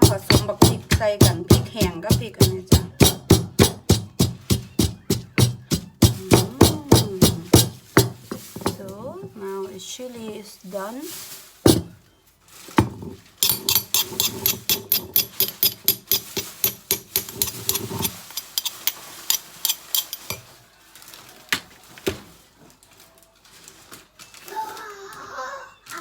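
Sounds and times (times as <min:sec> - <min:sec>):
utensil knocking: 0:00.0 - 0:09.4, 0:11.6 - 0:12.0, 0:12.8 - 0:20.4.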